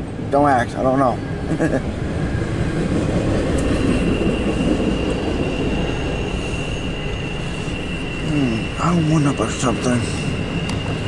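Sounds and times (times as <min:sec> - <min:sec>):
train wheels rumbling on rails: 0:00.0 - 0:11.0
high-pitched wheel squeal: 0:02.3 - 0:11.0.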